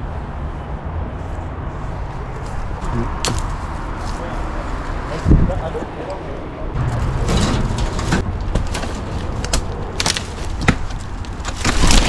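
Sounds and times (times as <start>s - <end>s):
sharp knocks and cracks: 3.2s - 3.6s, 7.0s - 12.0s
low rumble: 6.6s - 12.0s.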